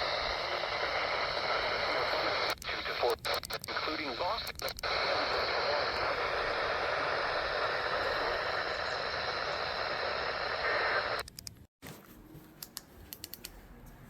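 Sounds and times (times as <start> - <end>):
radio static hiss: 0.0 - 11.2
faint clicks: 2.3 - 5.1.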